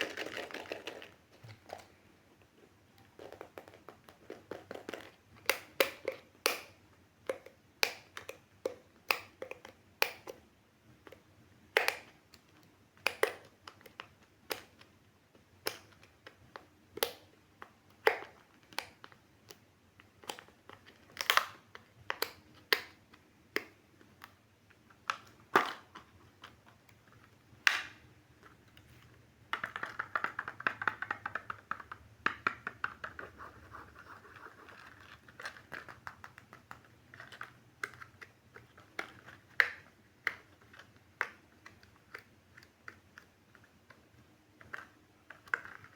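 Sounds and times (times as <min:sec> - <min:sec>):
plastic packaging clicks and snaps: 0:15.6 - 0:24.4.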